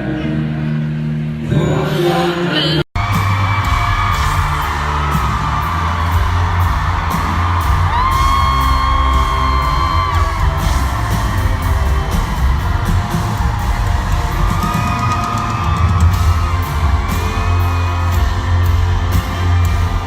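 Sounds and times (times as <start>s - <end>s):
live pop-rock music: 0.0s - 20.0s
crowd whooping and yelling: 3.0s - 20.0s.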